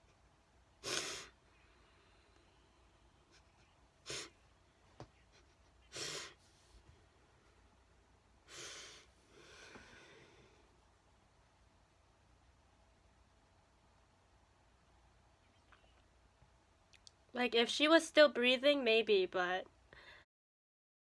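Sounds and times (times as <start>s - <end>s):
short sharp breaths or sniffs: 0.8s - 2.0s, 3.3s - 4.4s, 5.9s - 6.7s, 8.5s - 10.6s.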